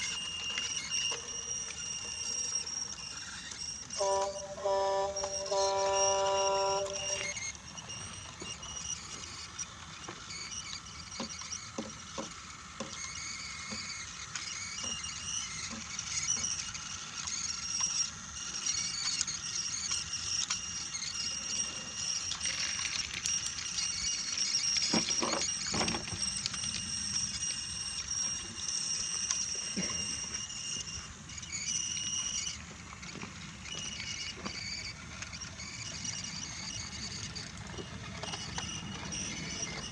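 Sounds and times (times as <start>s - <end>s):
toy train motor whine: 0.0s - 39.9s
wheels clicking over track joints: 18.8s - 39.9s.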